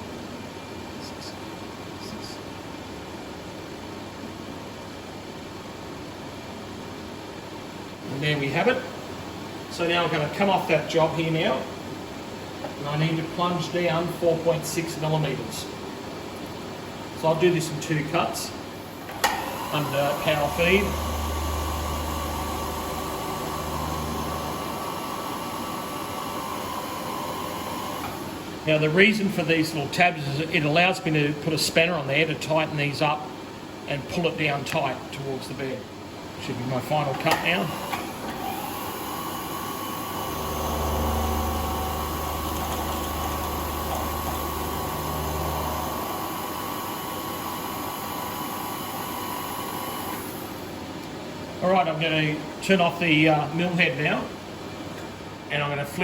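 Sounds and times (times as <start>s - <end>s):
low machine hum: 8.0s - 50.9s
milling machine cutting hiss: 18.8s - 28.6s, 37.2s - 50.7s.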